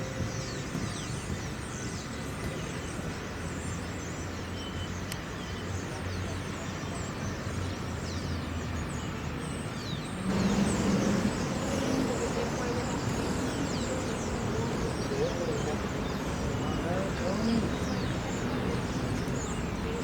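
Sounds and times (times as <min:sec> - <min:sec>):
traffic: 0:00.0 - 0:20.0
construction machinery: 0:10.3 - 0:20.0.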